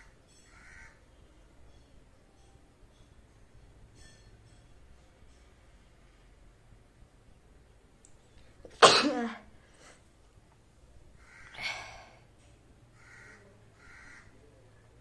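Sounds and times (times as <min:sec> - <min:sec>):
woman sneezing: 0:08.8 - 0:09.5.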